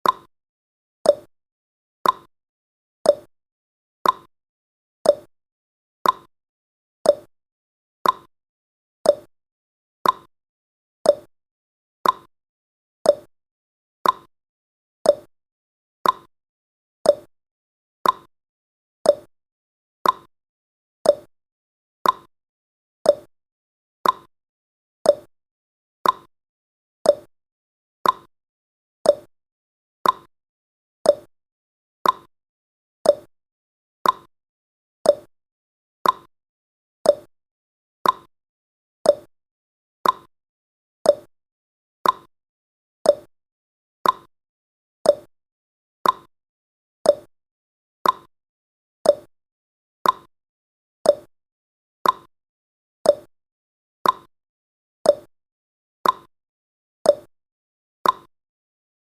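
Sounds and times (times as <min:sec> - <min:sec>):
timer ticking: 0:00.0 - 0:00.3, 0:01.1 - 0:01.3, 0:02.0 - 0:02.3, 0:03.1 - 0:03.3, 0:04.0 - 0:04.3, 0:05.1 - 0:05.3, 0:06.0 - 0:06.3, 0:07.1 - 0:07.3, 0:08.0 - 0:08.3, 0:09.1 - 0:09.3, 0:10.0 - 0:10.3, 0:11.1 - 0:11.3, 0:12.0 - 0:12.3, 0:13.1 - 0:13.3, 0:14.0 - 0:14.3, 0:15.1 - 0:15.3, 0:16.0 - 0:16.3, 0:17.1 - 0:17.3, 0:18.0 - 0:18.3, 0:19.1 - 0:19.3, 0:20.0 - 0:20.3, 0:21.0 - 0:21.3, 0:22.0 - 0:22.3, 0:23.1 - 0:23.3, 0:24.0 - 0:24.3, 0:25.1 - 0:25.3, 0:26.0 - 0:26.3, 0:27.1 - 0:27.3, 0:28.0 - 0:28.3, 0:29.1 - 0:29.3, 0:30.0 - 0:30.3, 0:31.1 - 0:31.3, 0:32.0 - 0:32.3, 0:33.0 - 0:33.3, 0:34.0 - 0:34.3, 0:35.1 - 0:35.3, 0:36.0 - 0:36.3, 0:37.1 - 0:37.3, 0:38.0 - 0:38.3, 0:39.1 - 0:39.3, 0:40.0 - 0:40.3, 0:41.1 - 0:41.3, 0:42.0 - 0:42.3, 0:43.1 - 0:43.3, 0:44.0 - 0:44.3, 0:45.1 - 0:45.3, 0:46.0 - 0:46.3, 0:47.1 - 0:47.3, 0:48.0 - 0:48.3, 0:49.1 - 0:49.3, 0:50.0 - 0:50.3, 0:51.1 - 0:51.3, 0:52.0 - 0:52.3, 0:53.1 - 0:53.3, 0:54.0 - 0:54.3, 0:55.1 - 0:55.3, 0:56.0 - 0:56.3, 0:57.1 - 0:57.3, 0:58.0 - 0:58.3.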